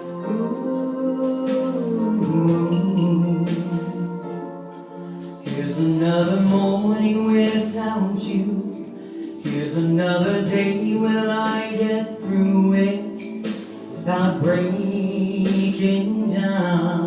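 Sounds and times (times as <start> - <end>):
musical accompaniment: 0.0 - 17.0
person singing long sliding notes: 0.0 - 17.0.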